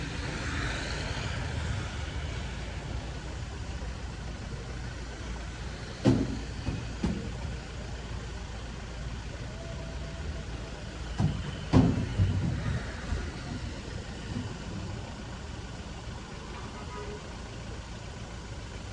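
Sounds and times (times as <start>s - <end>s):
low rumble of motor traffic: 0.0s - 18.9s
short heavy thumps: 11.1s - 13.0s.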